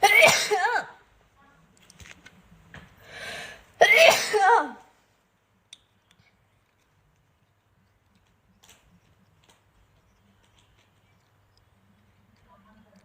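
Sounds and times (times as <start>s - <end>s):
woman sneezing: 0.0s - 1.0s, 3.8s - 4.8s
woman breathing in: 3.0s - 3.7s.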